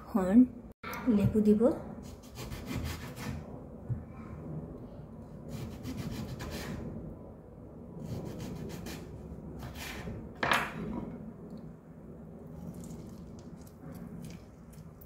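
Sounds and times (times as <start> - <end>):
rasping rubbing food preparation strokes: 8.0 - 10.2.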